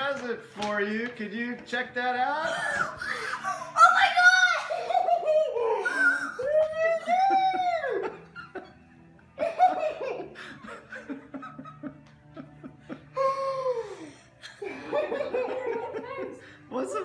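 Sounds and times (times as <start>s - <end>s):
excited laughter: 2.4s - 13.5s, 14.4s - 16.4s.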